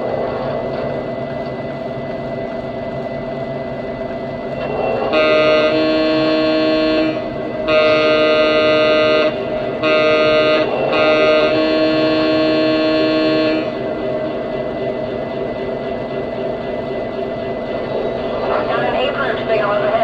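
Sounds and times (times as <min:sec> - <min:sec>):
diesel engine running: 0:00.0 - 0:20.0
locomotive multi-tone air horn: 0:04.6 - 0:14.0.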